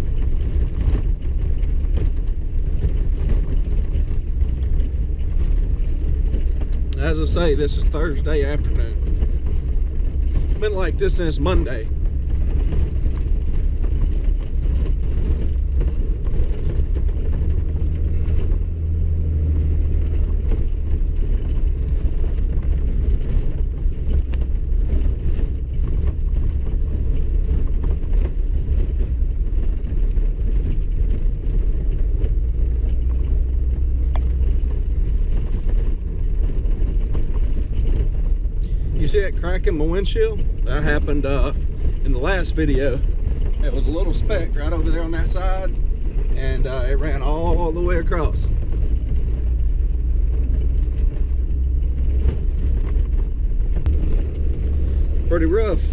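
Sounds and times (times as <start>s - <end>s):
low rumble of tyres and engine: 0.0s - 55.9s.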